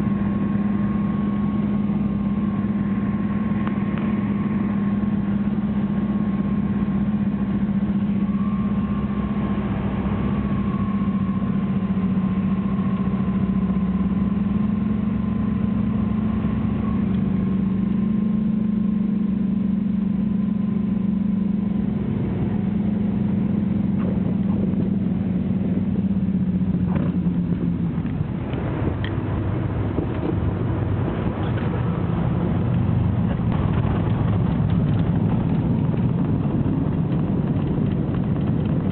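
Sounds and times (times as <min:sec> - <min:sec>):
aircraft engine drone in cabin: 0:00.0 - 0:38.9.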